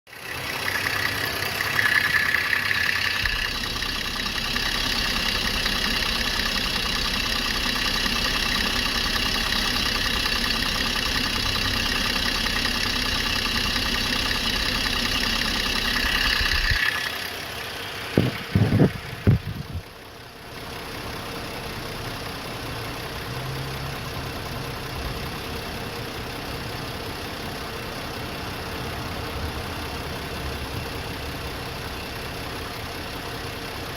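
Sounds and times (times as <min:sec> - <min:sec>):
car engine idling: 0:00.1 - 0:33.9
fast engine ticking: 0:00.1 - 0:33.9.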